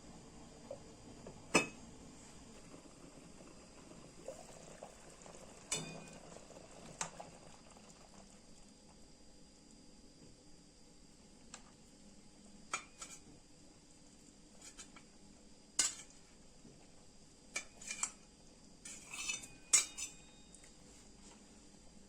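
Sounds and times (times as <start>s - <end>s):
pot bubbling: 0.0s - 9.2s.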